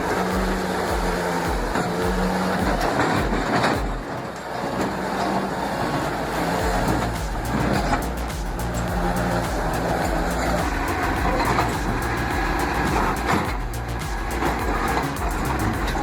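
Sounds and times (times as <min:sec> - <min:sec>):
music with low beat: 0:00.0 - 0:04.2, 0:06.6 - 0:16.0
heavy machine engine running: 0:05.2 - 0:16.0.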